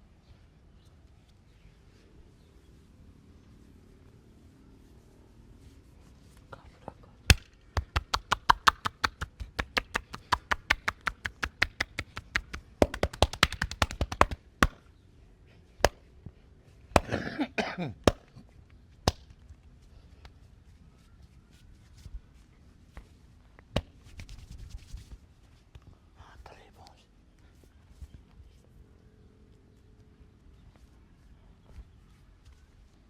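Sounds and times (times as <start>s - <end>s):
hand massage slaps: 7.3s - 14.9s, 15.8s - 16.1s, 18.0s - 18.3s, 19.1s - 19.4s.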